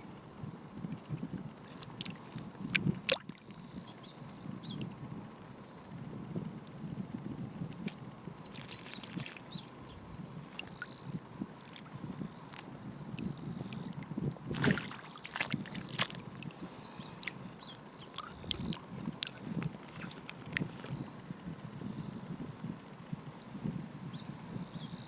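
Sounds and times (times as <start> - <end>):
puddle water sloshing and splashing: 8.5 - 9.4, 14.5 - 16.7, 18.2 - 21.0.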